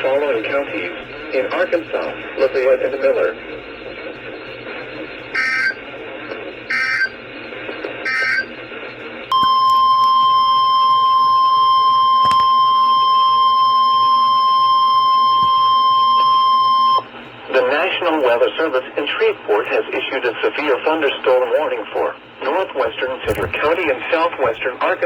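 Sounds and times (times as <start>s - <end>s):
radio hiss: 0.0s - 9.3s, 15.4s - 25.0s
digital data bursts: 5.3s - 5.8s.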